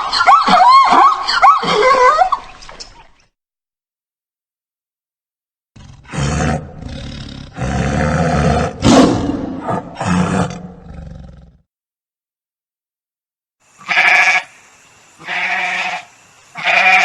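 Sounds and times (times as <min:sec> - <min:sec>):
large wild animal roaring: 0:05.8 - 0:11.6.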